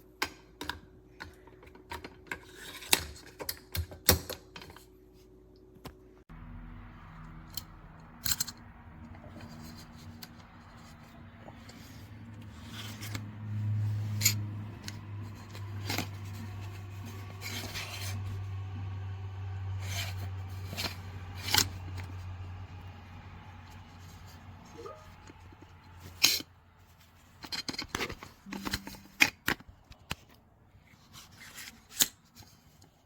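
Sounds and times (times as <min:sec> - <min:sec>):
low steady hum: 0:04.6 - 0:31.7
metal tool parts clicking: 0:07.5 - 0:08.7.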